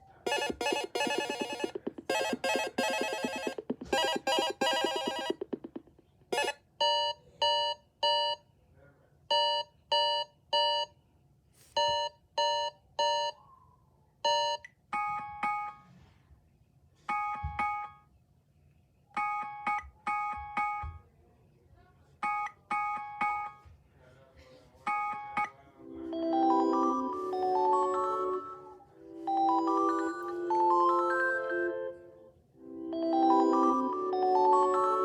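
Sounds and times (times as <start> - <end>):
electronic alarm beeps: 0.3 - 5.8, 6.4 - 8.4.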